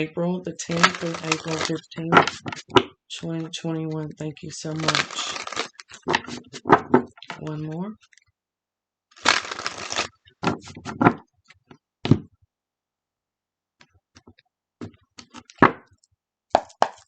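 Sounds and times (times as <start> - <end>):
cards shuffling: 0.7 - 2.7, 4.6 - 8.2, 9.1 - 11.0.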